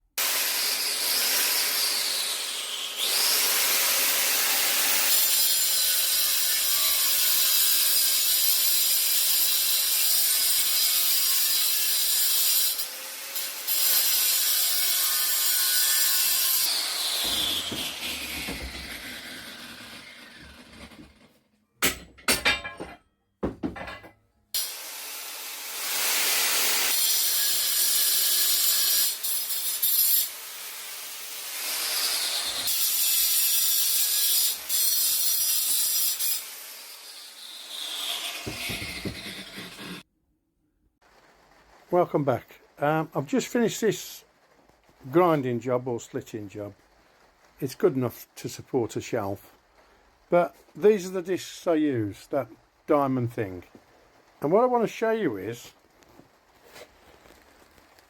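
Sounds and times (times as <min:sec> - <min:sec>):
angle grinder cutting: 0:00.2 - 0:21.3, 0:24.6 - 0:40.0
knocks: 0:21.8 - 0:24.2, 0:38.4 - 0:39.5.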